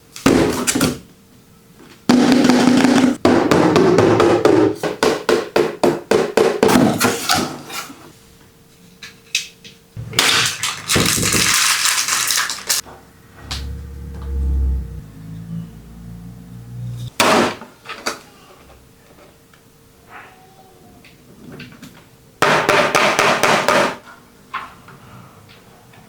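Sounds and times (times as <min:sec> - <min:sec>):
packaging crackling: 0:10.0 - 0:12.8
plastic wrap rustling: 0:10.0 - 0:12.8
low rumble: 0:13.1 - 0:17.1.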